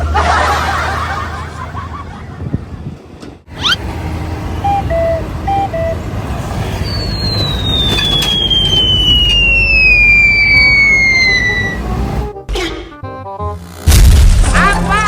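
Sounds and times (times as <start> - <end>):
heavy vehicle engines rumbling: 0.0 - 12.4
falling whistle sound effect: 3.6 - 3.8, 6.8 - 11.8.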